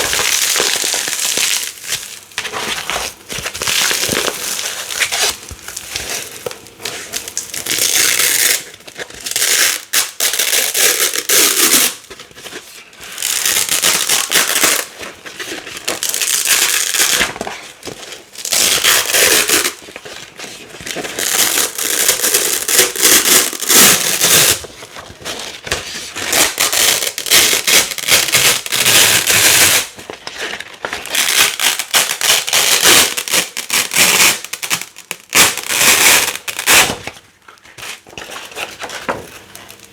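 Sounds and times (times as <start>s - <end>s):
velcro ripping: 0.0s - 2.1s, 2.7s - 6.5s, 7.1s - 12.1s, 13.2s - 14.9s, 15.9s - 17.4s, 18.4s - 19.8s, 21.1s - 24.6s, 26.3s - 30.0s, 31.0s - 37.1s.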